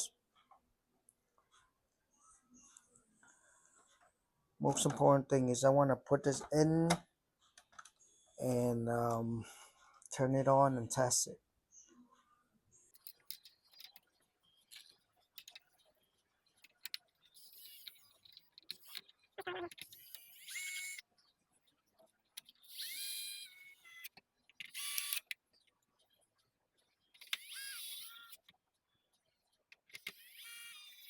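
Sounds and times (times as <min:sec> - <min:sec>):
short high squeaks: 0:19.4 - 0:21.0.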